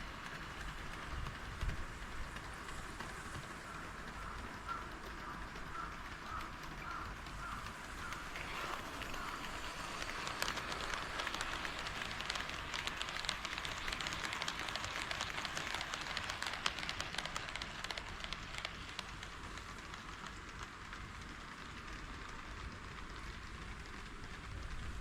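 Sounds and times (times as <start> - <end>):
model train wheels rattling: 0.0 - 25.0.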